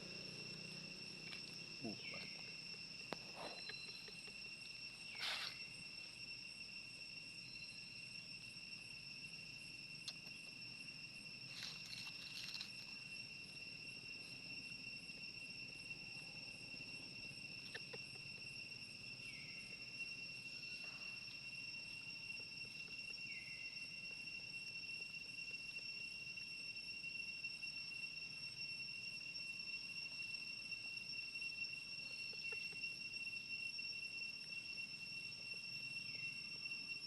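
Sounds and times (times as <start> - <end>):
insects trilling: 0.0 - 37.0.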